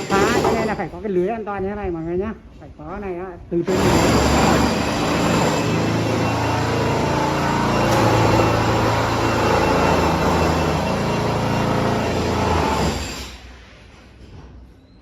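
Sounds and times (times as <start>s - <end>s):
loud steady mechanical noise: 3.6s - 14.1s.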